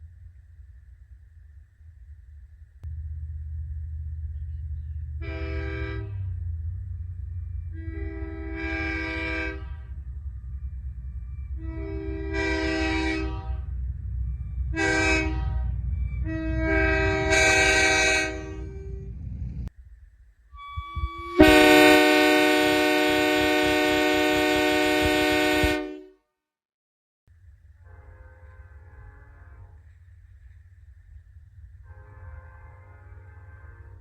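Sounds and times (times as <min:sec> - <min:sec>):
steady low rumble: 0:00.0 - 0:25.9, 0:28.6 - 0:34.0
locomotive air horn chord blasts: 0:05.2 - 0:06.4, 0:07.7 - 0:10.0, 0:11.6 - 0:13.8, 0:14.7 - 0:19.2, 0:20.6 - 0:26.2, 0:27.8 - 0:29.9, 0:31.8 - 0:34.0.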